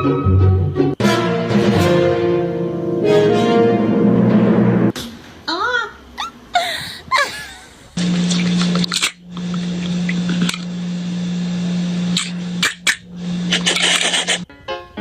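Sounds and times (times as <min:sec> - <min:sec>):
small motor humming: 0:08.0 - 0:14.4.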